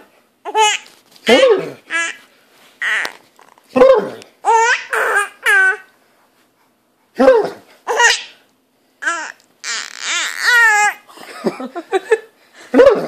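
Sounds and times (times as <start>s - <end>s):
baby laughing: 0.4s - 2.2s, 2.8s - 3.2s, 4.4s - 5.9s, 7.9s - 8.4s, 9.0s - 11.6s
man making silly vocal noises: 1.3s - 1.9s, 3.7s - 4.3s, 7.2s - 7.7s, 9.6s - 10.7s, 12.7s - 13.0s.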